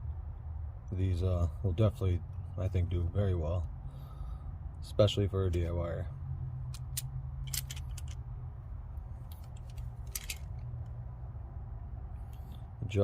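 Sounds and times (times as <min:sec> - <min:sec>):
steady low hum: 0:00.0 - 0:13.0
metallic clicks of pliers: 0:06.7 - 0:08.2.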